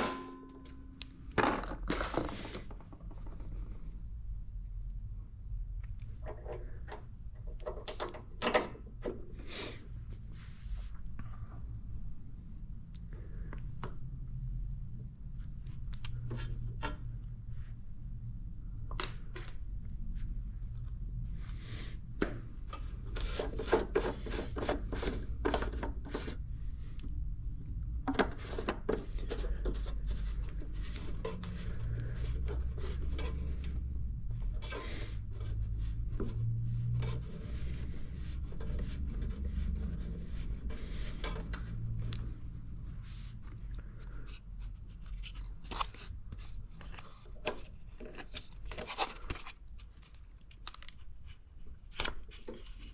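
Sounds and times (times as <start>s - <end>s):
low steady hum: 0.0s - 52.9s
scraping and rubbing: 1.2s - 3.9s, 21.4s - 26.4s, 28.1s - 50.2s.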